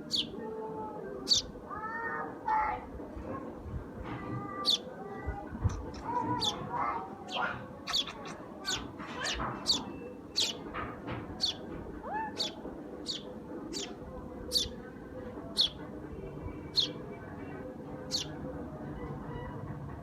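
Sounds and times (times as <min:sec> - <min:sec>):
sparrows chirping: 0:00.0 - 0:01.6, 0:04.5 - 0:05.0, 0:05.6 - 0:18.6
lower bird calls: 0:07.3 - 0:10.6.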